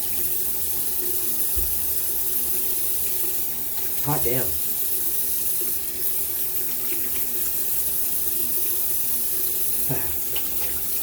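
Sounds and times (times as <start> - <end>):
face being rinsed: 0.0 - 11.0
sink tap running: 0.0 - 11.0.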